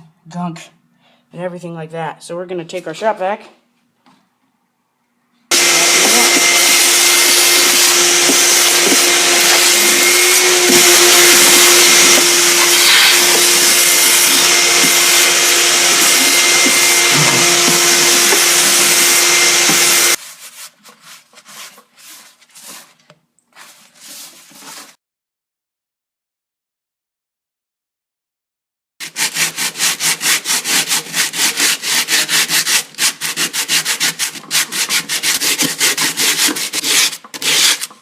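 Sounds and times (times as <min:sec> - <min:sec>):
shop vac running: 0:05.5 - 0:20.2.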